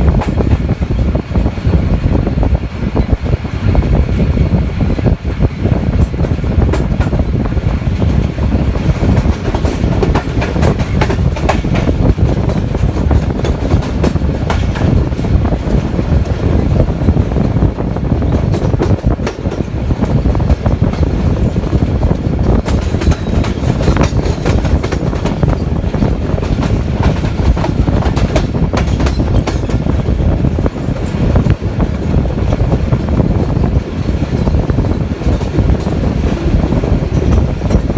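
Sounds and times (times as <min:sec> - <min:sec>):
train carriages rumbling: 0:00.0 - 0:37.9
wheels clattering over rail joints: 0:18.1 - 0:37.9.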